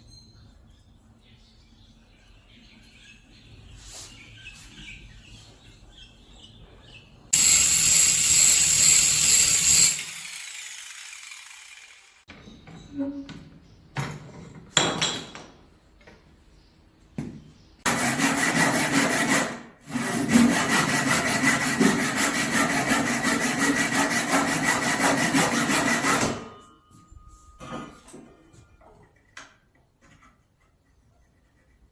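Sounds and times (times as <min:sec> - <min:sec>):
hand saw cutting wood: 0:07.4 - 0:12.3, 0:17.9 - 0:26.5.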